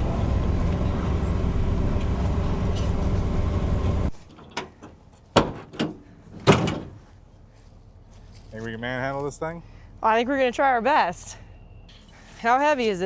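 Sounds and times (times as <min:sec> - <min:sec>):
vehicle engine running: 0:00.0 - 0:04.2
sharp knocks: 0:04.4 - 0:07.0.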